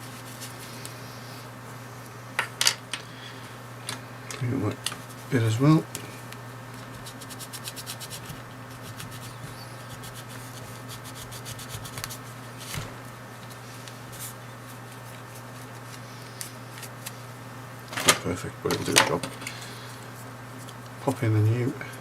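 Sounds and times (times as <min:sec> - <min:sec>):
rubbing on key fob: 0:06.8 - 0:12.3.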